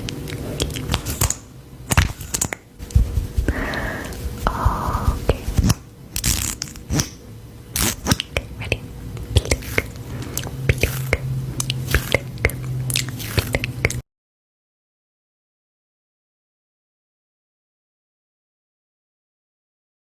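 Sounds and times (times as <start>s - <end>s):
rasping tearing sounds: 4.5s - 7.2s, 7.8s - 8.3s, 9.4s - 14.0s.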